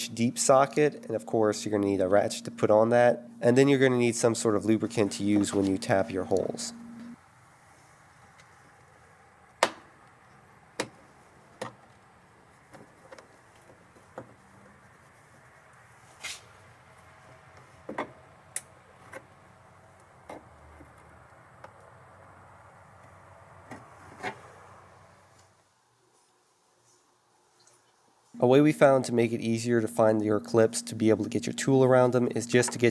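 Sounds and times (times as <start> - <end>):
faint background hiss: 0.0 - 9.2, 25.0 - 32.9.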